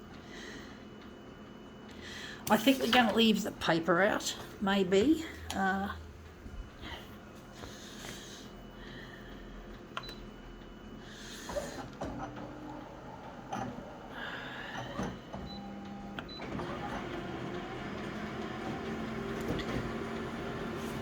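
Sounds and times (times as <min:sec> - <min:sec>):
photocopier motors whirring: 0:10.5 - 0:21.0.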